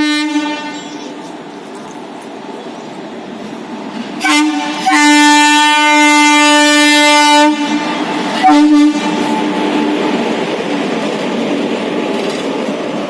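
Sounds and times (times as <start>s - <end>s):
train horn blasts: 0.0s - 1.1s, 4.2s - 10.0s
train rumble: 0.0s - 13.0s.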